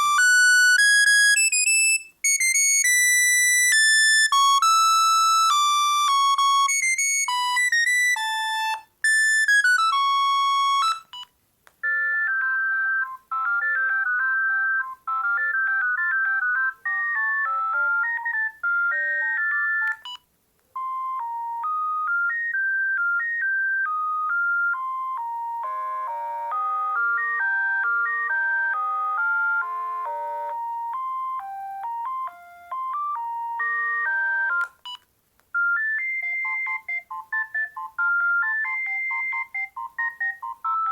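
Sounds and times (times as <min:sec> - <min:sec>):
electronic ringtone beeping tunes: 0:00.0 - 0:20.2, 0:20.8 - 0:35.0, 0:35.6 - 0:40.9.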